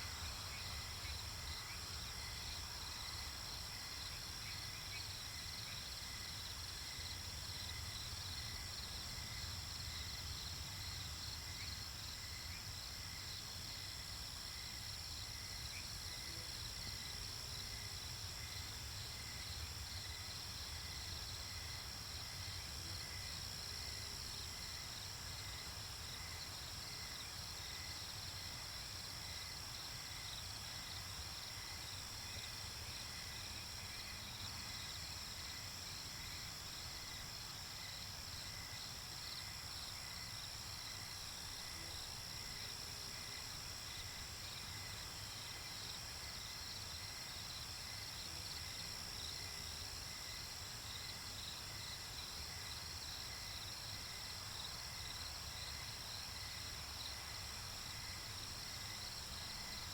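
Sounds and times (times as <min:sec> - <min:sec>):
crickets and insects chirring: 0:00.0 - 0:59.9.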